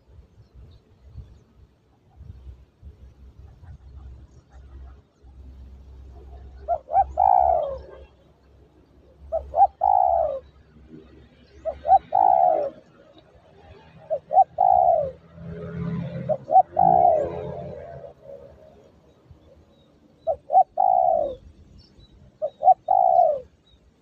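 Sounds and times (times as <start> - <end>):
dove cooing: 3.4 - 8.4, 9.0 - 23.6.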